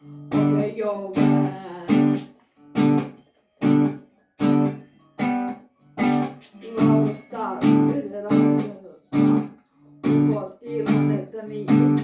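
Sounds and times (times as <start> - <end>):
guitar chords strummed: 0.0 - 12.0.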